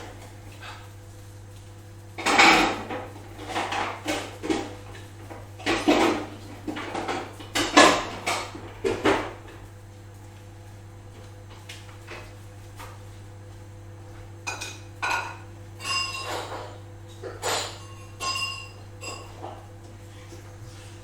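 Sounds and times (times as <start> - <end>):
dishes and cutlery clinking: 14.5 - 19.7.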